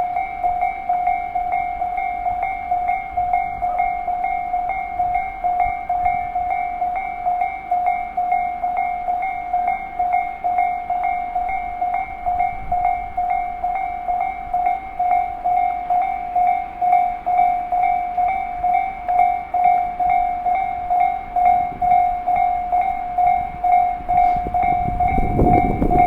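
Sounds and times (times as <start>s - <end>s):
level crossing alarm clanging: 0.0s - 26.0s.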